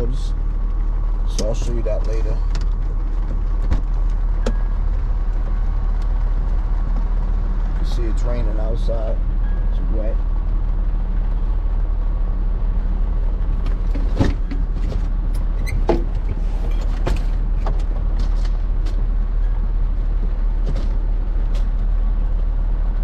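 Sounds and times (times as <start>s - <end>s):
steady low hum: 0.0s - 23.0s.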